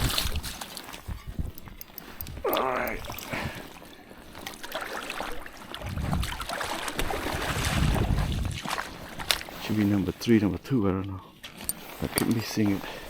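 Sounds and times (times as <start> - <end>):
wind buffeting microphone: 0.0 - 3.7, 5.8 - 9.4
small clicks: 1.4 - 3.3.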